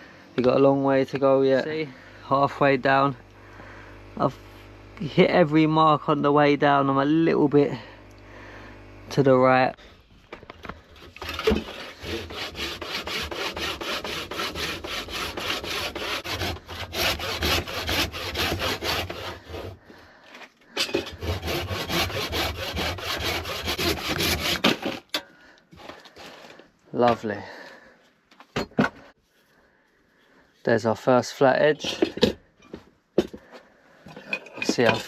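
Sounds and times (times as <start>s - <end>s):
hand saw ripping through a log: 11.0s - 19.8s, 20.9s - 25.2s.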